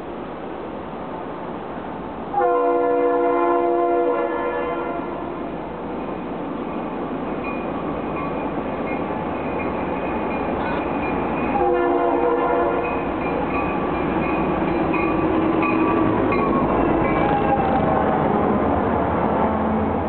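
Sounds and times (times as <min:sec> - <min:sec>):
freight train rumble: 0:00.0 - 0:20.0
train air horn chord: 0:02.4 - 0:05.5, 0:11.6 - 0:12.8
locomotive bell ringing: 0:07.3 - 0:11.8, 0:12.5 - 0:17.8.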